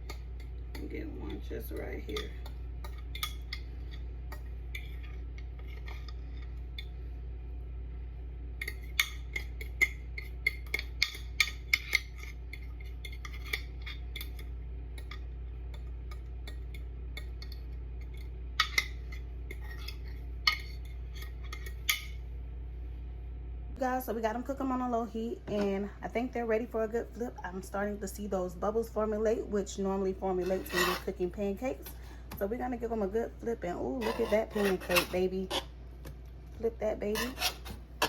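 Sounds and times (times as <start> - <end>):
utensil clinking on bowl and griddle: 0.0 - 6.9, 34.0 - 35.7
steady low hum: 0.0 - 38.0.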